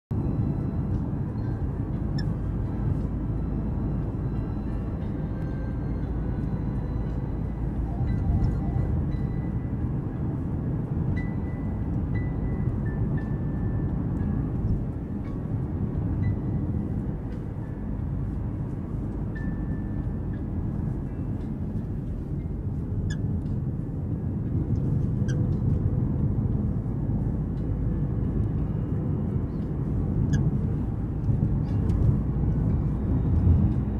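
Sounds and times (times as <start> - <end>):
car road rumble: 0.1 - 33.9
high-pitched squeaks: 4.3 - 9.7.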